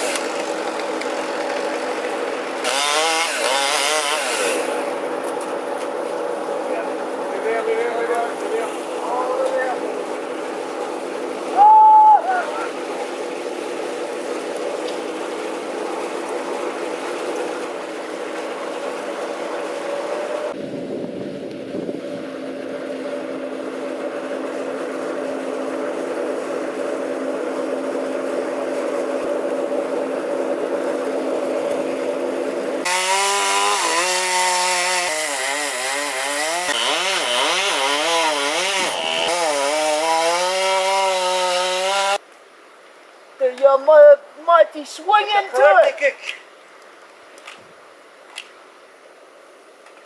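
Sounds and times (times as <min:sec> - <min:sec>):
chainsaw revving and cutting wood: 0:00.0 - 0:05.2, 0:32.8 - 0:42.2.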